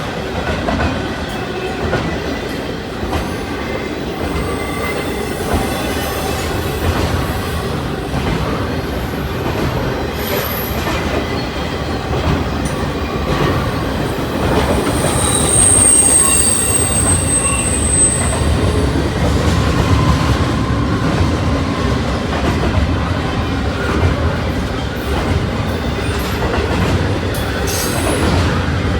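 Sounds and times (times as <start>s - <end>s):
freight train rumbling on rails: 0.0s - 28.9s
high wheel squeal: 4.2s - 7.7s, 10.1s - 11.6s, 13.5s - 19.3s.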